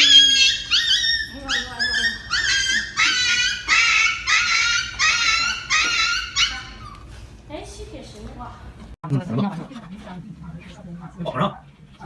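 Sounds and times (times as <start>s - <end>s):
dog whining and yelping: 0.0s - 7.2s.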